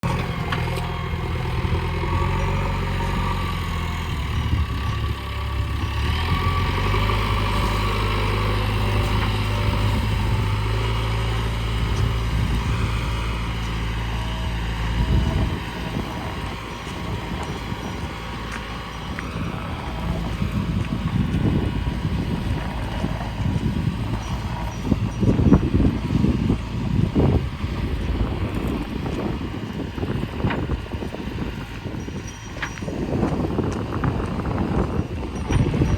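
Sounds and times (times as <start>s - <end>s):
diesel engine running: 0.0s - 35.9s.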